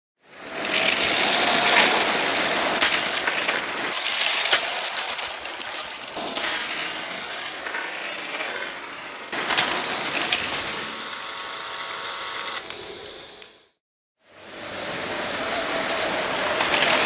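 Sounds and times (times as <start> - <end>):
toy train wheels rattling: 0.4 - 11.2, 15.3 - 17.0.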